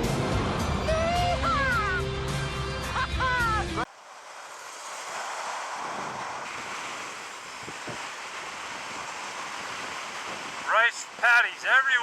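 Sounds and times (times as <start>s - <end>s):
wind buffeting microphone: 5.1s - 11.2s.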